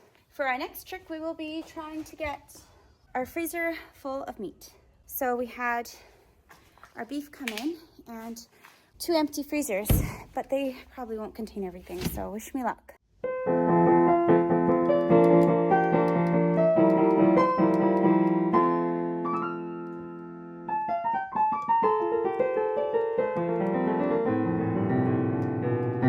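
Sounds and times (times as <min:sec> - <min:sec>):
piano music: 0:13.1 - 0:26.0.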